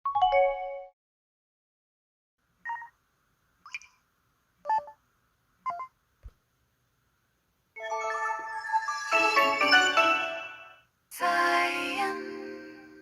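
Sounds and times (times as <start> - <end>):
phone electronic beeps: 5.7 - 5.9.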